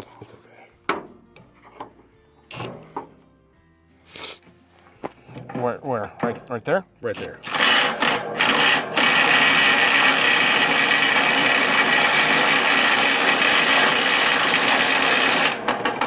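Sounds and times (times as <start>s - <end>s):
handheld power tool running: 7.4s - 16.0s.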